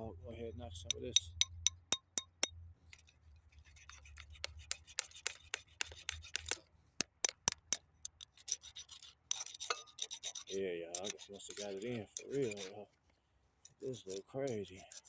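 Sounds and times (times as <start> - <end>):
metal file scraping metal: 2.9 - 6.6, 8.0 - 12.8, 13.8 - 15.0.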